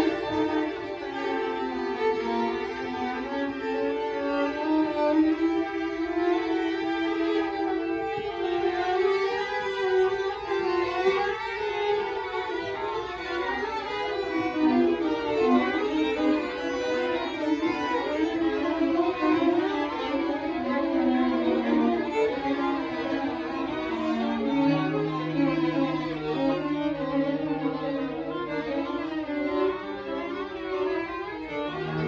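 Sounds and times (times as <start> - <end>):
string quartet playing: 0.0 - 32.0.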